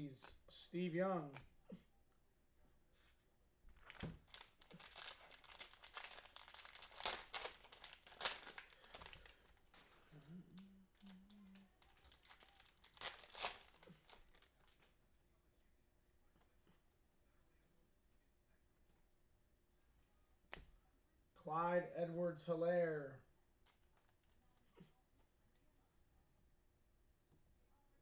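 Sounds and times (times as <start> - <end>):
cellophane wrapper tearing and crinkling: 3.8 - 14.9, 23.6 - 24.4.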